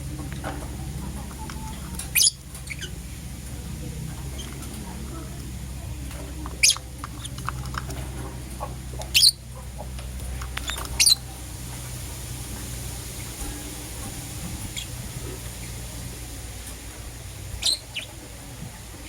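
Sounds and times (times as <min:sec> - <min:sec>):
soft bird chirps: 0:01.2 - 0:03.3, 0:06.4 - 0:07.6, 0:09.0 - 0:09.6, 0:10.5 - 0:11.5, 0:13.0 - 0:16.0, 0:17.6 - 0:18.2
shrill lovebird calls: 0:17.6 - 0:18.1.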